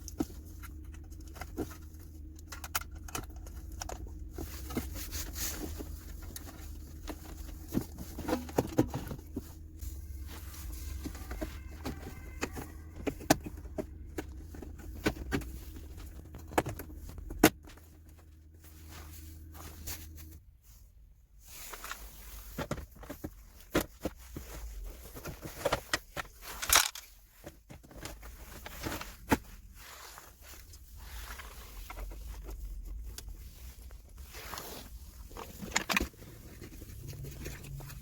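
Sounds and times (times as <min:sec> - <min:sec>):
hands clicking and tapping parts: 0:00.0 - 0:09.5, 0:11.0 - 0:18.3
steady low hum: 0:00.0 - 0:38.0.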